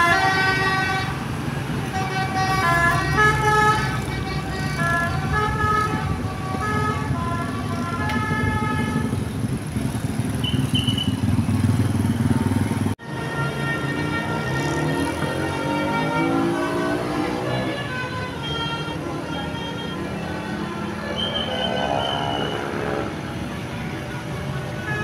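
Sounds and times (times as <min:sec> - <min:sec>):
bus horn playing a tune: 0:00.0 - 0:09.4, 0:12.3 - 0:23.2, 0:24.2 - 0:25.0
bus engine rumble: 0:00.0 - 0:14.3.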